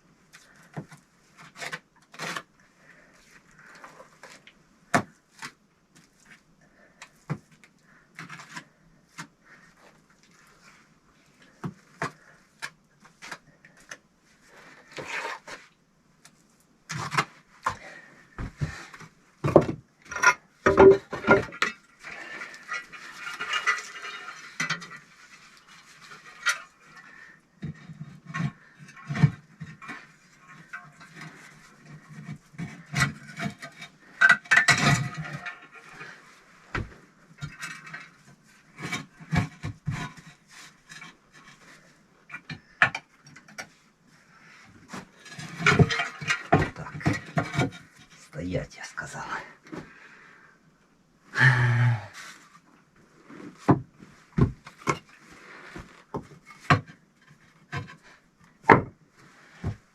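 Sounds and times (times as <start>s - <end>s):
bricks and tools knocking: 19.4s - 21.8s.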